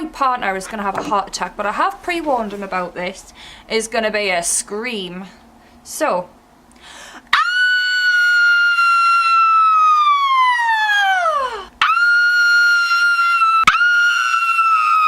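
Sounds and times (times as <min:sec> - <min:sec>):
woman screaming: 0:07.3 - 0:15.0.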